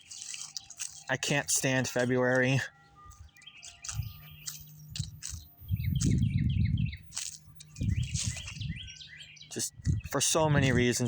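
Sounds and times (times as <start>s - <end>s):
small birds chirping: 0.0s - 11.0s
wind chime ringing: 1.6s - 6.0s
wind buffeting microphone: 3.0s - 11.0s.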